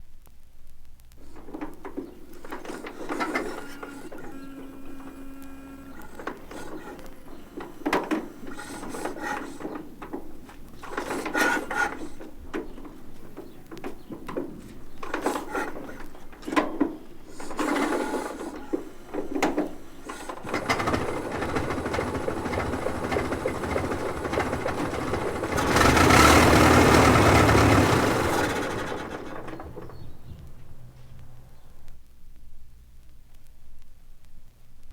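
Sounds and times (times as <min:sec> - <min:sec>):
old car engine knocking and chuffing: 0:06.3 - 0:31.7.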